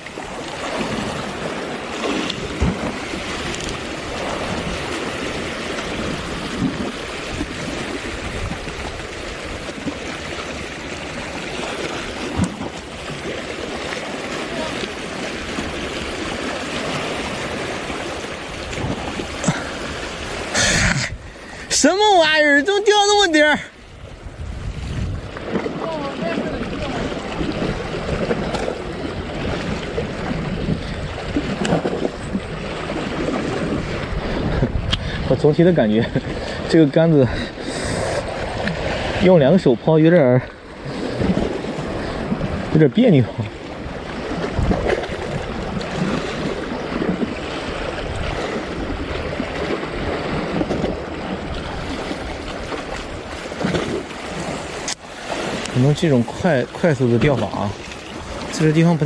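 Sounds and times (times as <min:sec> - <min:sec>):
waves breaking on rocky shore: 0:00.0 - 0:59.0
wind buffeting microphone: 0:00.0 - 0:59.0.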